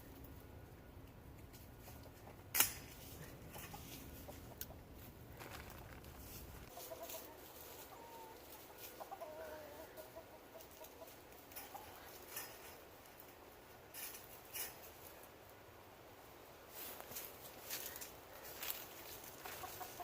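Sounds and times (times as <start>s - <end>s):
chickens clucking: 1.4s - 13.3s, 17.7s - 20.0s.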